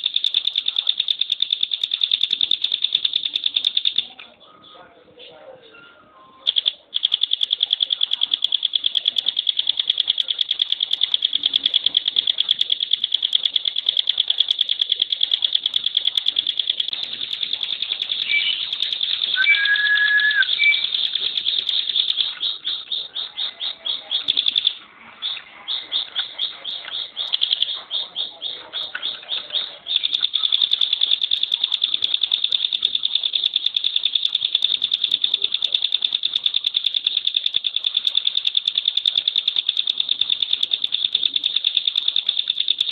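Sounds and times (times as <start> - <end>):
bird fast high trill: 18.1 - 21.2
short lower whistle: 19.4 - 20.8.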